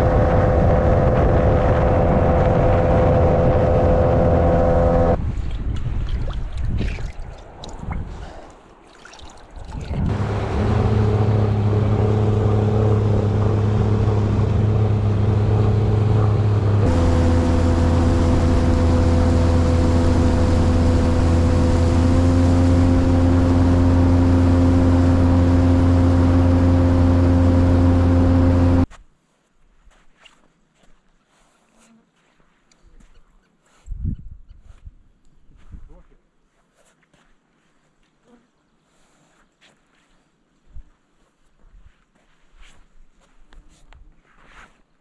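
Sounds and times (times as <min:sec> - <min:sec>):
boat motor running: 0:00.0 - 0:05.2, 0:10.1 - 0:28.9.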